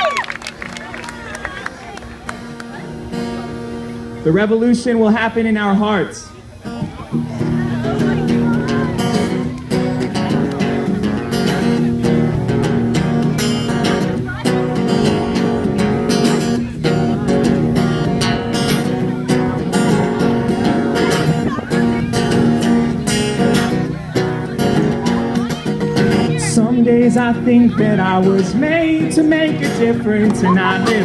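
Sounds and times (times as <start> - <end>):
acoustic guitar strumming: 0.0 - 31.0.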